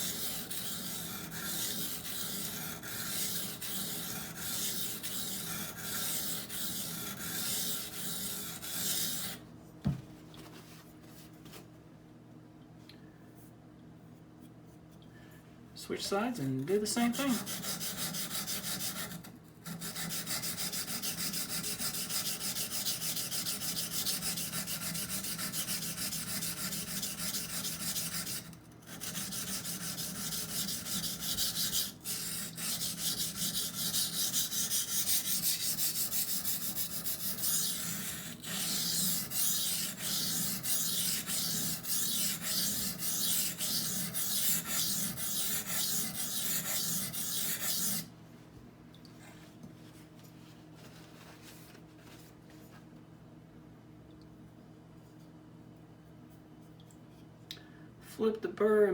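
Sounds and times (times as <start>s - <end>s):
knife scraping on water stone: 22.2s - 48.1s.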